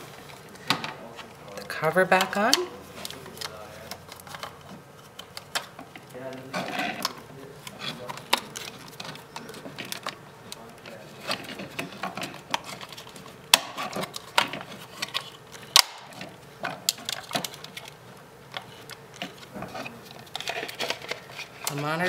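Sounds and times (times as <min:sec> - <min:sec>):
plastic parts clicking and snapping: 0:02.2 - 0:21.8.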